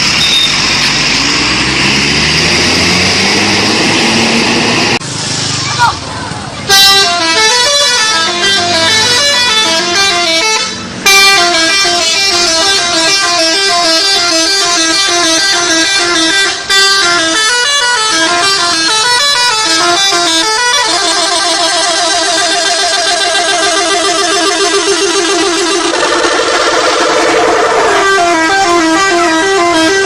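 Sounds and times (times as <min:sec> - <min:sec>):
bus musical horn playing a tune: 0:00.2 - 0:00.8, 0:06.7 - 0:30.0.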